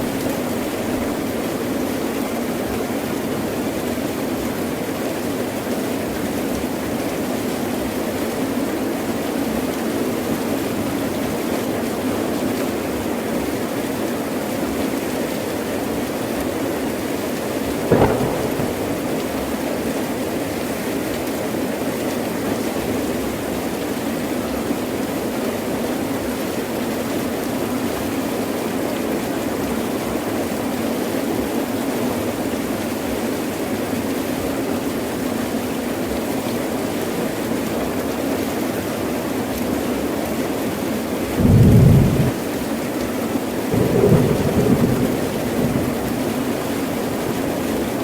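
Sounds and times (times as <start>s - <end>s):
heavy rain pouring: 0.0s - 20.6s, 31.6s - 48.0s
sharp crack: 17.8s - 19.9s.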